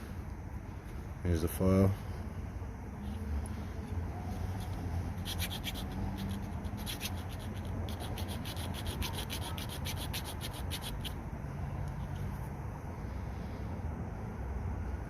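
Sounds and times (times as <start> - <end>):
metal file rasping on chain: 4.5 - 11.2.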